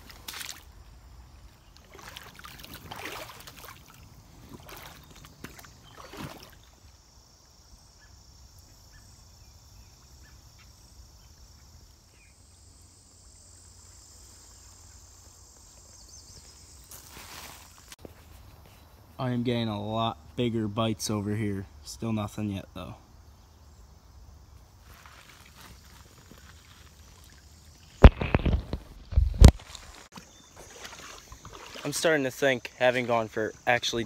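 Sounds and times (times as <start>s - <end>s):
splashy steps in water: 0.0s - 0.7s, 1.8s - 6.8s, 25.0s - 33.4s
constant high-pitched hiss: 0.0s - 34.0s.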